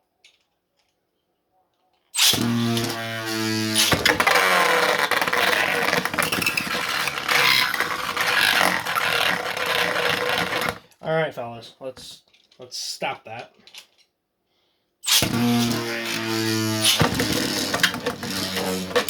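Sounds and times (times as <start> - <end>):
launcher whir: 2.2 - 10.8, 15.1 - 19.0
spinning tops scraping whir: 2.2 - 10.8, 15.1 - 19.0.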